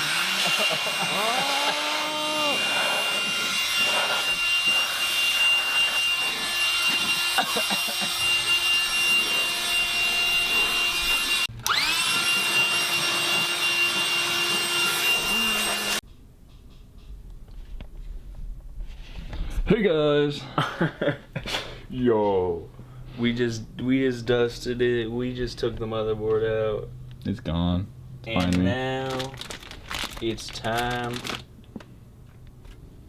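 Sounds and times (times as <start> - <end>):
electric air blower whining: 0.0 - 16.0.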